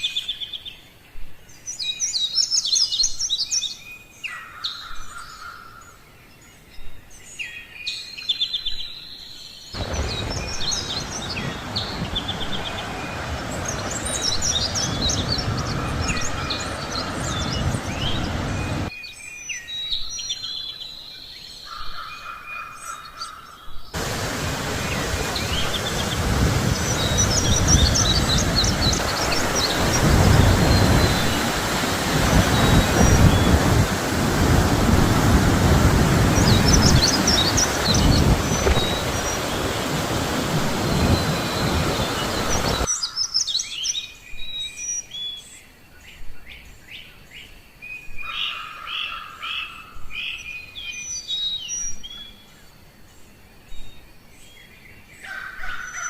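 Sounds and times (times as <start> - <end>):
small birds chirping: 0.0 - 52.8
loud steady rushing noise: 9.8 - 18.9, 24.0 - 42.9.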